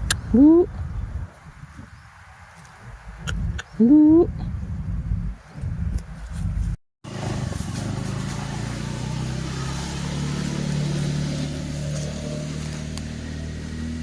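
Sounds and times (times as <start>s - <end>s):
vehicle engine running: 7.0s - 14.0s.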